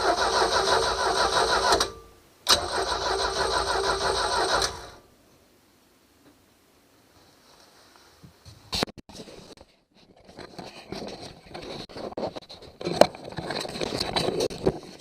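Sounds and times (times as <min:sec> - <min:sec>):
rustling: 0:07.0 - 0:15.0.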